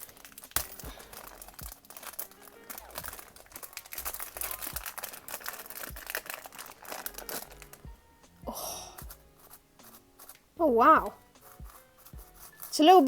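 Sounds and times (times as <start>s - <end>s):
plastic packaging crinkling: 0.0s - 7.9s.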